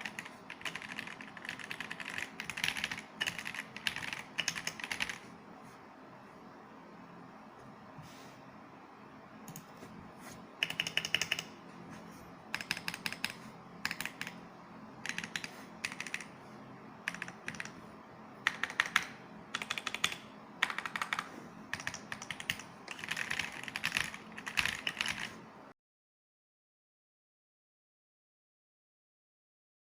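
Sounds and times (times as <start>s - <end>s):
mechanical keyboard typing: 0.0s - 5.3s, 10.6s - 11.6s, 12.5s - 14.4s, 15.0s - 16.4s, 17.0s - 25.4s.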